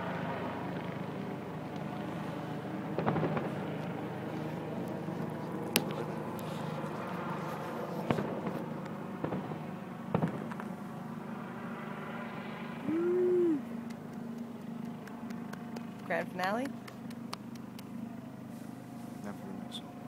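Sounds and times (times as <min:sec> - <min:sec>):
steady low hum: 0:00.0 - 0:20.0
distant fireworks bangs: 0:03.0 - 0:03.8, 0:08.0 - 0:10.7
rising and falling tone: 0:12.8 - 0:13.7.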